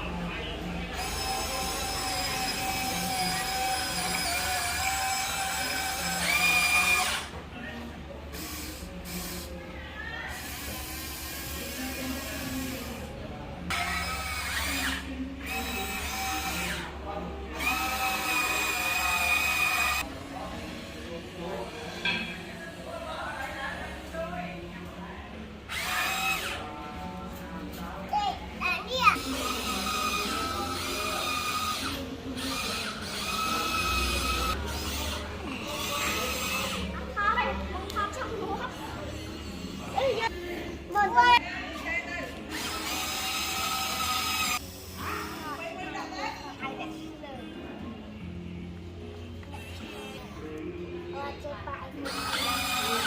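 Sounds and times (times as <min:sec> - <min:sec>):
electric motors whining: 0:00.0 - 0:07.4, 0:08.3 - 0:09.6, 0:10.3 - 0:21.6, 0:25.7 - 0:27.2, 0:29.2 - 0:37.6, 0:38.5 - 0:40.4, 0:42.3 - 0:45.8, 0:52.0 - 0:53.0.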